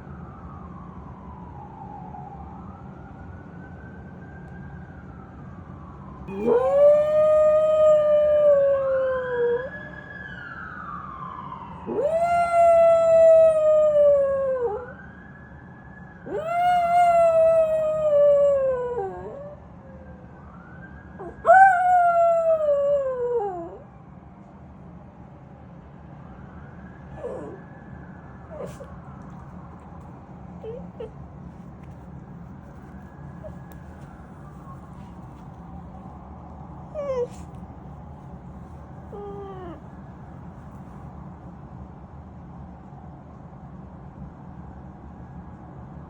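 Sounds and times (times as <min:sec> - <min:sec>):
faint siren wailing: 0:00.0 - 0:24.2, 0:26.0 - 0:41.6
dog howling: 0:06.3 - 0:09.7, 0:11.9 - 0:14.8, 0:16.3 - 0:19.6, 0:21.2 - 0:23.8, 0:27.2 - 0:27.6, 0:28.5 - 0:28.9, 0:30.6 - 0:31.2, 0:36.9 - 0:37.6, 0:39.1 - 0:39.8.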